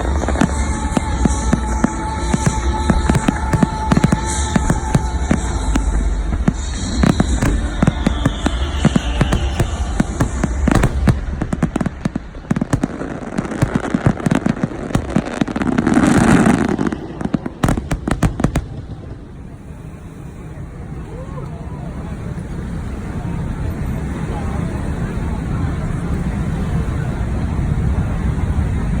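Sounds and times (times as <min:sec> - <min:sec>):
firework falling whistle: 0:00.0 - 0:19.1
loud rushing firework burst: 0:00.0 - 0:20.2
fireworks banging and crackling: 0:00.0 - 0:29.0.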